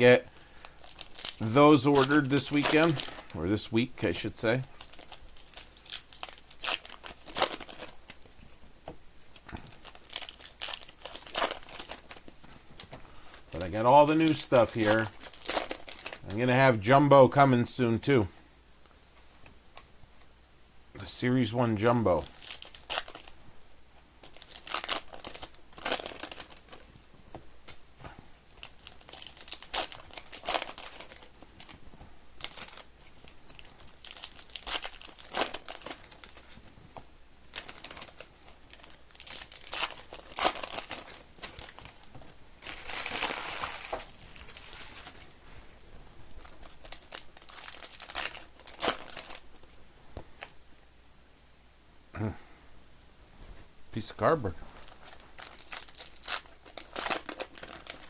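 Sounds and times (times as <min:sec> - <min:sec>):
foil wrappers crinkling and tearing: 0:00.1 - 0:08.4, 0:09.3 - 0:16.8, 0:21.6 - 0:23.4, 0:24.2 - 0:26.9, 0:28.6 - 0:36.9, 0:37.5 - 0:45.6, 0:46.2 - 0:49.7, 0:54.7 - 0:58.0.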